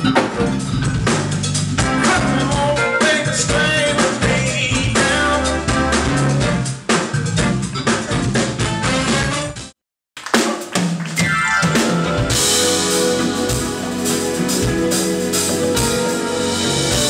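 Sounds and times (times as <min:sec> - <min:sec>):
drum kit beat: 0:00.0 - 0:09.5, 0:10.2 - 0:17.0
bass: 0:00.0 - 0:09.8, 0:11.2 - 0:17.0
person singing: 0:01.9 - 0:06.1.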